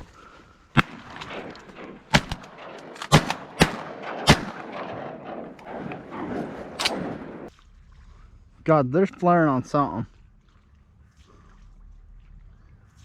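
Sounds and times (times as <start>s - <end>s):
shotgun blasts: 0.7s - 7.5s.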